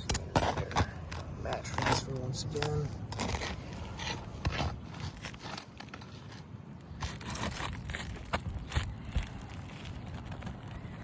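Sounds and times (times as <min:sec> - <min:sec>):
roof shingles being pried apart: 0:03.0 - 0:08.9.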